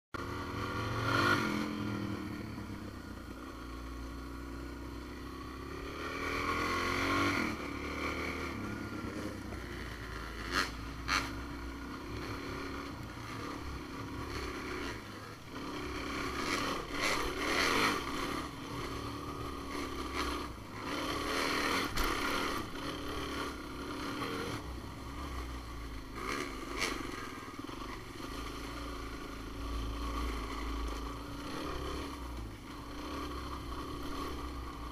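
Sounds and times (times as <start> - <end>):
off-road vehicle engine running: 0.1 - 34.9.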